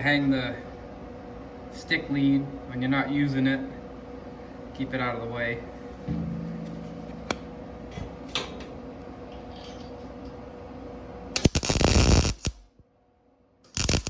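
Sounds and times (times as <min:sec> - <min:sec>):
steady hum: 0:05.8 - 0:11.3
welding arc crackle: 0:11.4 - 0:12.6, 0:13.7 - 0:14.0.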